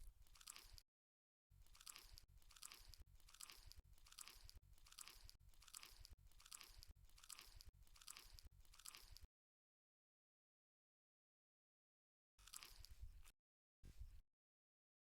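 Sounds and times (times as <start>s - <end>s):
chewing food: 0.0s - 0.8s, 1.6s - 9.3s, 12.4s - 13.1s.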